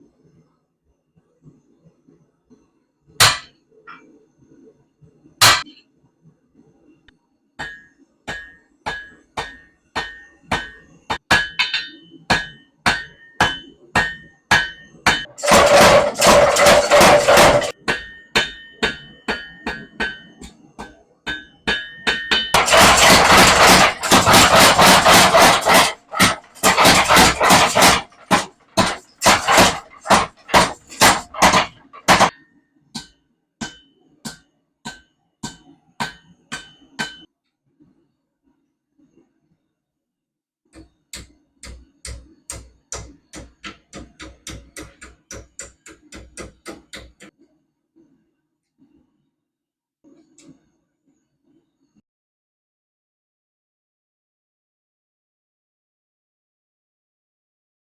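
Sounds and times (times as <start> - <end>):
hammer ringing on anvil: 7.6 - 23.1, 33.0 - 37.3
power hammer rapid blows: 15.1 - 17.7, 22.5 - 32.3.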